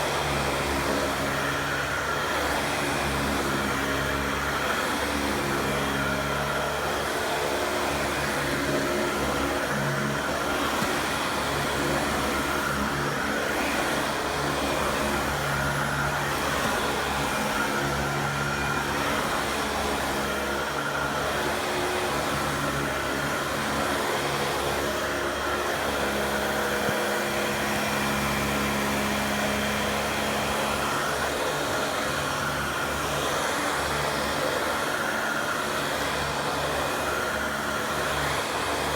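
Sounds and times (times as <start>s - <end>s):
vacuum cleaner running: 0.0s - 38.9s.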